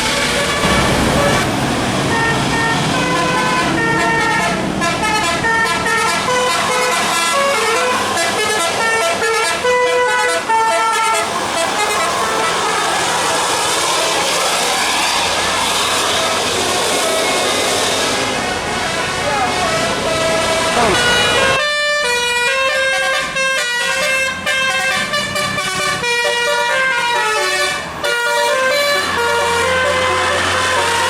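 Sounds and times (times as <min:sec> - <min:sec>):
musical air horn tune: 0:00.0 - 0:14.4, 0:15.6 - 0:31.0
vehicle noise: 0:00.0 - 0:31.0.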